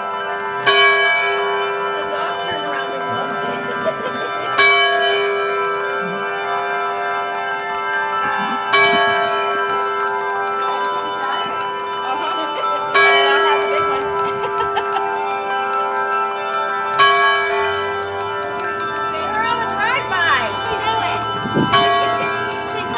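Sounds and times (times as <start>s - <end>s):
large church bell ringing: 0.0s - 22.9s.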